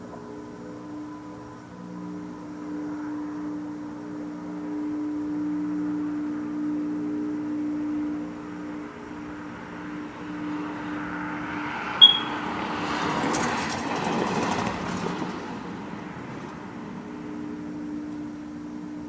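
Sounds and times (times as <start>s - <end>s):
passing vehicle rush: 9.4s - 16.5s
short sharp high chirp: 12.0s - 12.4s.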